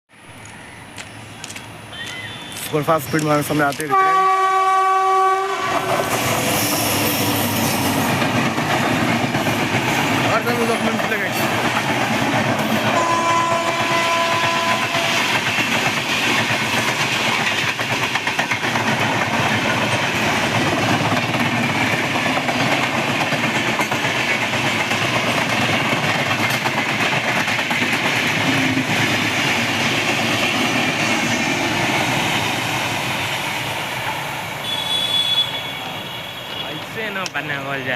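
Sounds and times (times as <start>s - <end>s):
train wheels on rails: 0.1s - 37.9s
train horn: 3.9s - 6.1s, 12.9s - 15.3s, 34.6s - 36.8s.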